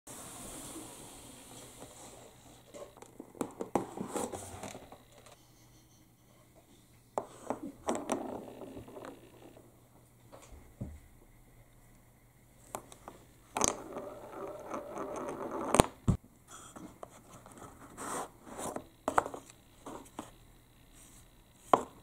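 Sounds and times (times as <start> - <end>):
marbles clacking on wooden track: 7.8 - 9.6, 13.5 - 16.1.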